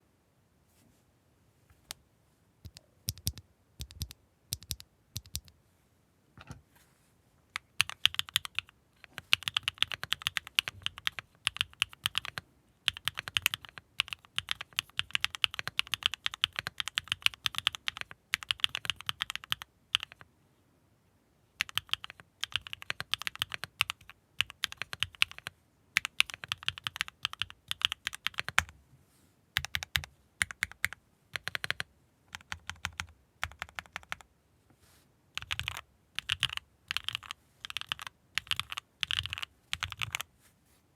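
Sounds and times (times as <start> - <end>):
typing on mechanical keyboard: 2.7 - 5.5, 7.6 - 20.2, 21.6 - 28.7, 29.6 - 34.3, 35.4 - 40.2.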